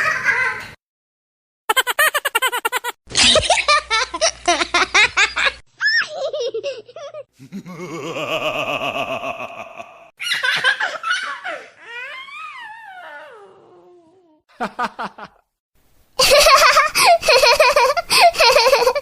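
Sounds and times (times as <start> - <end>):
people laughing in bursts: 1.7 - 11.6, 16.2 - 19.0.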